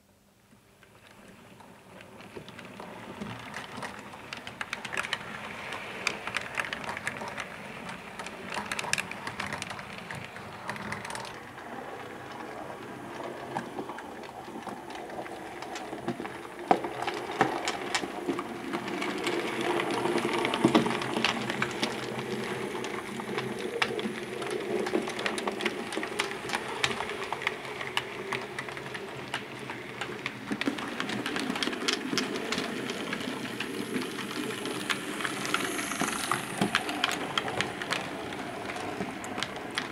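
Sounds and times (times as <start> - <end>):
wheels clicking on track: 0.6 - 39.9
model train motor whirring: 31.3 - 39.4.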